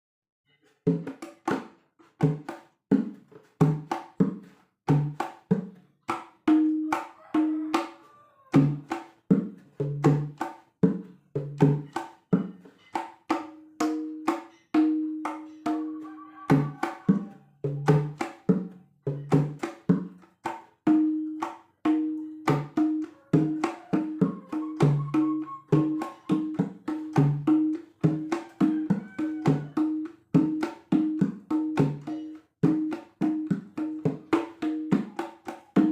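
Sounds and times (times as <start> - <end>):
hand drum playing: 6.4 - 7.9, 11.6 - 35.9.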